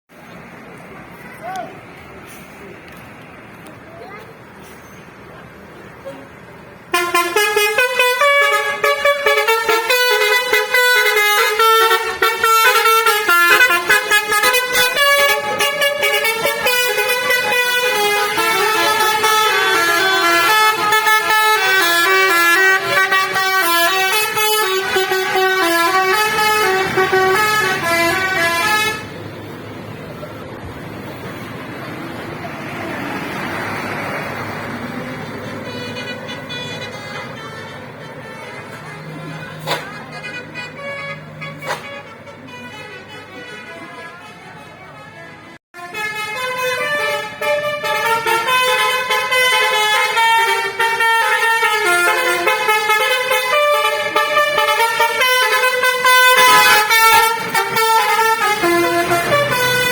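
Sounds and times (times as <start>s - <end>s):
musical air horn tune: 6.9s - 29.1s, 45.8s - 59.9s.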